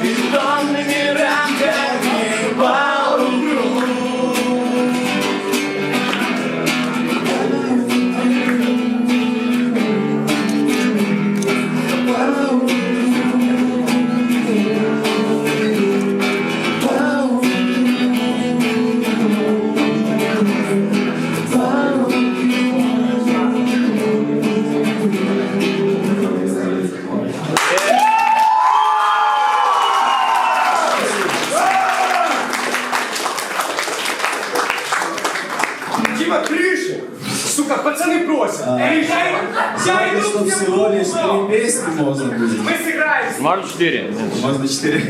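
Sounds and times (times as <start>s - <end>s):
strummed guitar chords: 0.0s - 27.4s.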